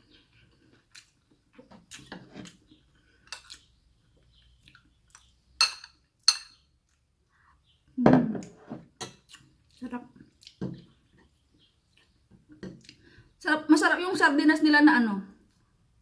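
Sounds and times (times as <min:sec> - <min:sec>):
cutlery clinking on a plate: 0:05.6 - 0:06.6.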